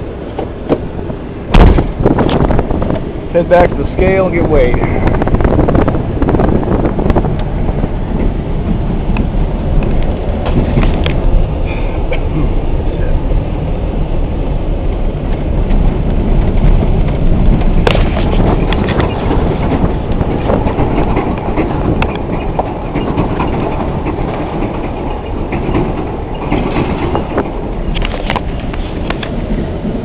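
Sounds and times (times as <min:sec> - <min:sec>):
truck rumbling: 0:00.0 - 0:30.0
knocks and rattles: 0:05.0 - 0:11.4, 0:15.3 - 0:30.0.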